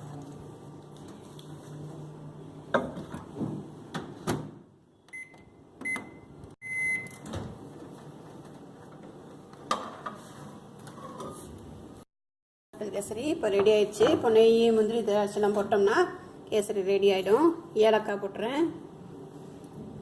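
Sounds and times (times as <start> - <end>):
microwave beeps: 4.9 - 7.2.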